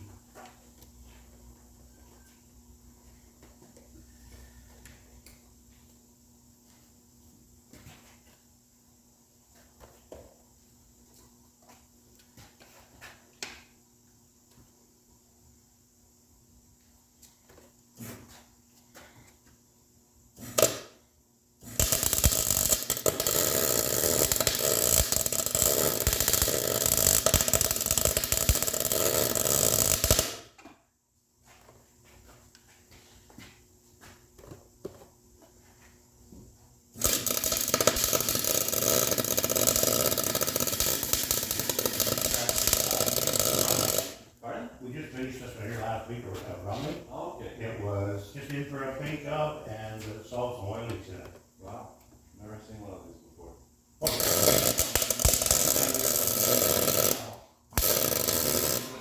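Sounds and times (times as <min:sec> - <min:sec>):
welder crackling: 0:20.4 - 0:21.0, 0:21.6 - 0:30.5, 0:37.0 - 0:44.3, 0:54.0 - 0:59.0.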